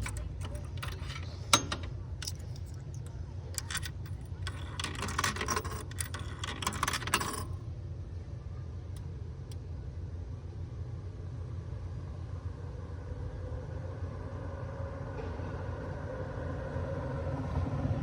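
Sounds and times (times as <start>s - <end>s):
coins clinking into coin slot: 0.0s - 7.6s.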